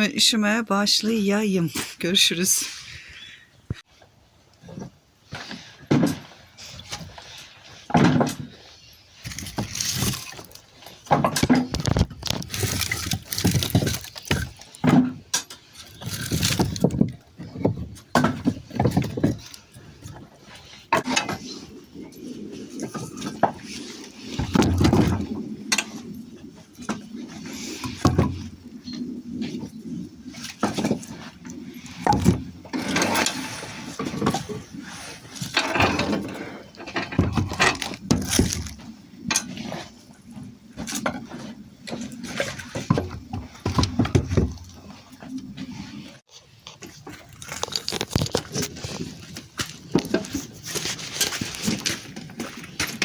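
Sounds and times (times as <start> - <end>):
hard objects knocking and scraping: 7.9 - 21.8, 22.7 - 29.8, 30.4 - 39.7, 40.8 - 45.0.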